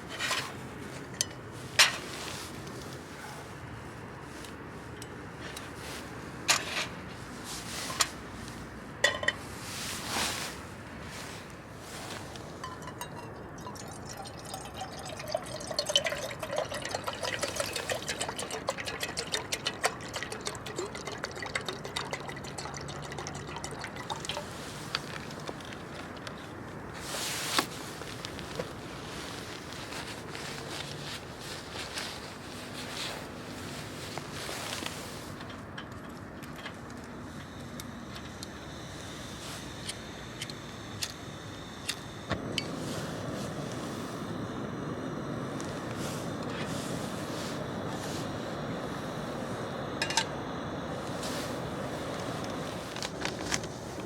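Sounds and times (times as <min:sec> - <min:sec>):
liquid dripping and trickling: 0:12.8 - 0:25.6.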